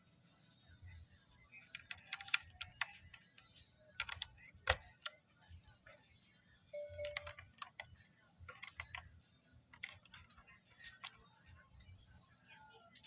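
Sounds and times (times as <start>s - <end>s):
keycaps clicking and snapping: 1.7s - 3.3s, 4.0s - 5.2s, 6.8s - 7.9s, 8.5s - 9.1s, 9.7s - 11.1s.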